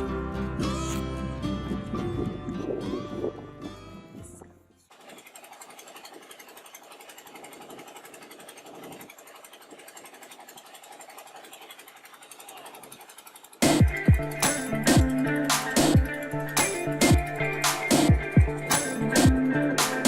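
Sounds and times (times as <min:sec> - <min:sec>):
background music: 0:00.0 - 0:04.6, 0:13.6 - 0:20.0
small boat engine clattering: 0:04.9 - 0:20.0.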